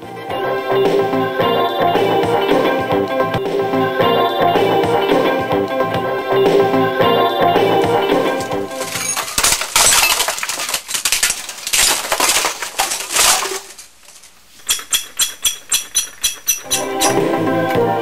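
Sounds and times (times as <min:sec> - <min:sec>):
music: 0:00.0 - 0:08.7, 0:16.7 - 0:18.0
clattering clinking crashes: 0:08.2 - 0:17.2.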